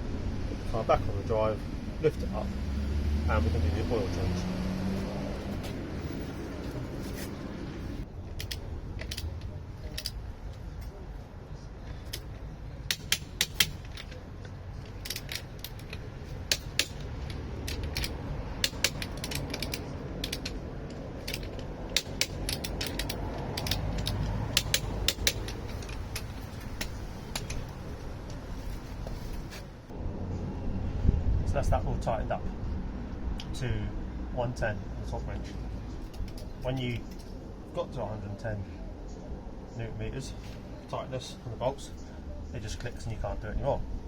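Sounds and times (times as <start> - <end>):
torque wrench clicking: 12.9 - 14.2, 15.0 - 20.6, 21.2 - 27.6.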